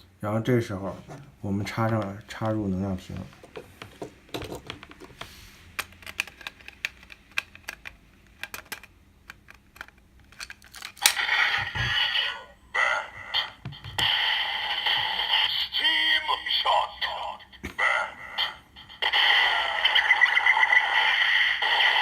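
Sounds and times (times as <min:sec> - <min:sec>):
plastic toy clicks: 0:05.8 - 0:11.3
toy electronic sound effects: 0:11.0 - 0:22.0
toy voice audio: 0:11.2 - 0:22.0.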